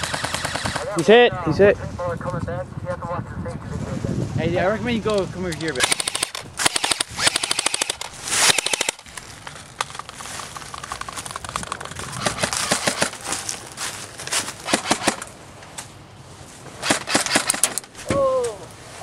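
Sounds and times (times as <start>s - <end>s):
airsoft guns firing: 0.0s - 1.0s, 5.8s - 9.1s, 12.2s - 13.2s, 14.6s - 15.3s, 16.8s - 17.9s.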